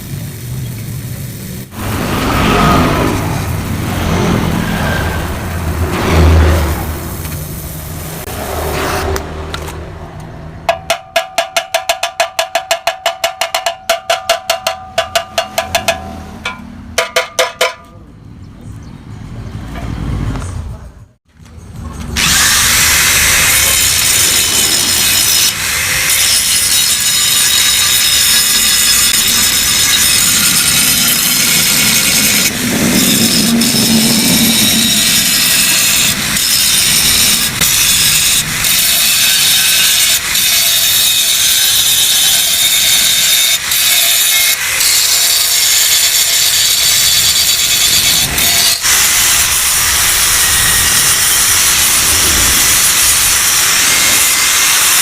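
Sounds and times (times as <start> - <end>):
angle grinder cutting steel: 22.2 - 55.0.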